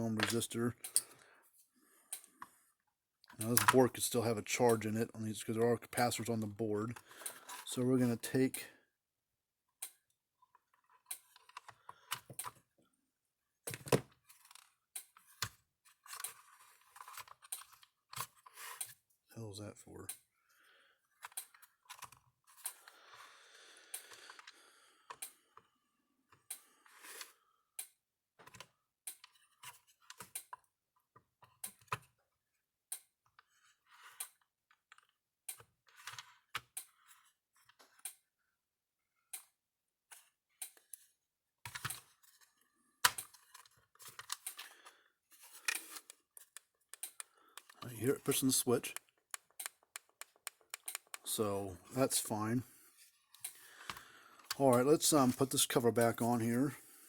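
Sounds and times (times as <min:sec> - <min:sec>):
hands handling parts and tools: 0:41.7 - 0:56.9.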